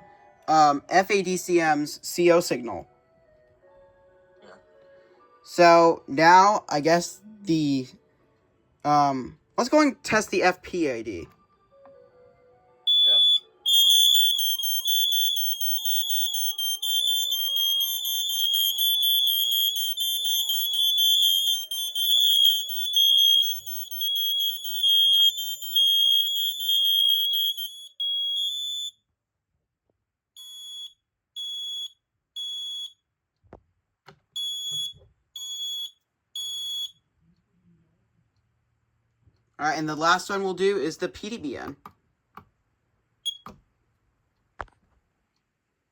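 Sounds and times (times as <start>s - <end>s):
smoke alarms beeping: 12.9s - 29.0s, 30.4s - 33.0s, 34.4s - 37.0s, 43.2s - 43.5s.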